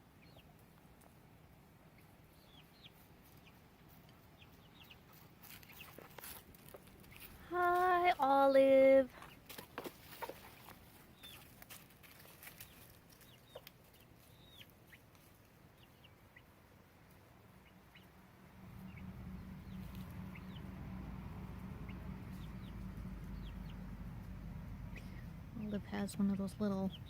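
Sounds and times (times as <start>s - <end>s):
chickens peeping and clucking: 0.0s - 8.0s, 9.2s - 27.0s
steady low rumble: 17.3s - 27.0s.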